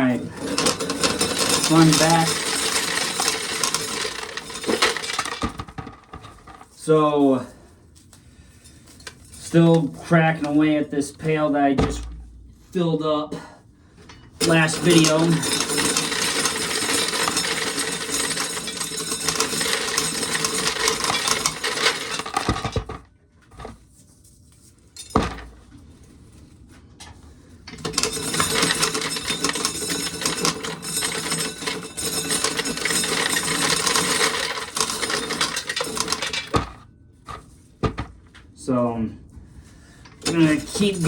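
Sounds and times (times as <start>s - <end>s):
kernels rattling into metal pail: 0.0s - 7.0s, 8.9s - 12.3s, 14.4s - 23.8s, 25.0s - 25.6s, 27.7s - 38.2s, 40.1s - 41.0s.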